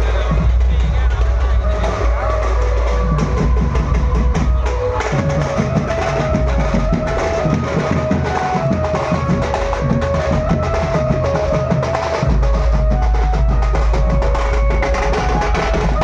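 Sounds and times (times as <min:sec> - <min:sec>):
fast busy drumming: 0:00.0 - 0:16.0
melody of long held notes: 0:01.8 - 0:16.0.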